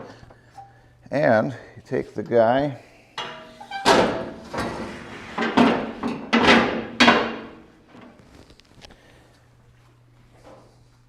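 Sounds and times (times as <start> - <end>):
metal fence clanking: 3.2 - 7.7.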